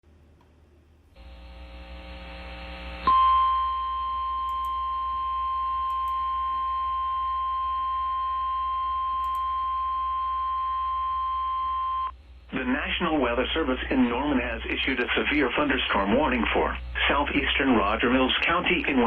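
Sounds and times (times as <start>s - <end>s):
hiss with low hum: 0.1s - 3.1s, 12.1s - 19.0s.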